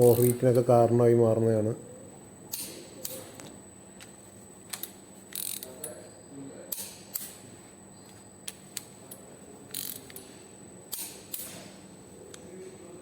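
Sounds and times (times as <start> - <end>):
ratchet wrench clicking: 0.0 - 0.4, 4.7 - 6.0, 8.5 - 10.2, 10.9 - 11.6.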